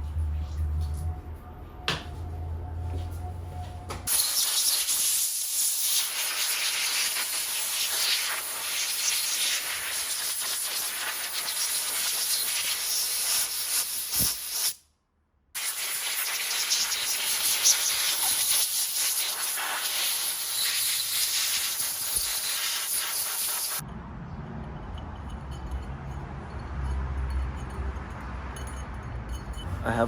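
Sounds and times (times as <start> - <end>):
water spraying from hose nozzle: 4.1 - 14.8, 15.6 - 23.8.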